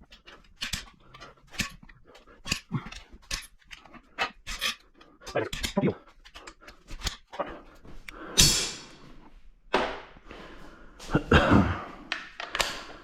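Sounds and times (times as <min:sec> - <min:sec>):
metal tools clanking: 0:00.0 - 0:07.5.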